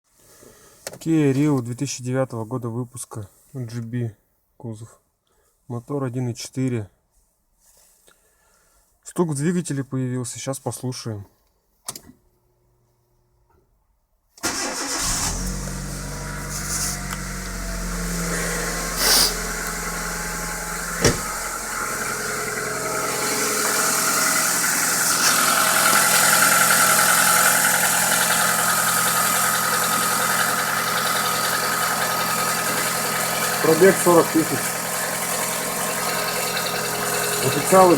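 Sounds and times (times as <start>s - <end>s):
car engine starting and idling: 14.4s - 37.9s.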